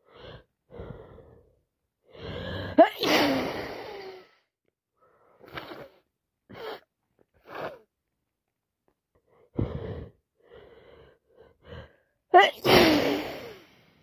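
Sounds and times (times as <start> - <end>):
person sniffing congested nose: 5.4 - 6.8.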